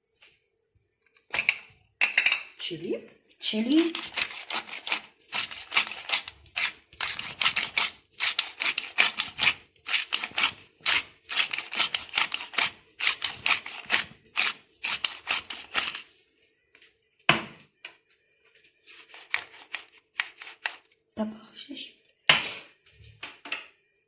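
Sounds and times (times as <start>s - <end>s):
spice mill grinding: 3.6s - 16.1s, 18.9s - 20.9s.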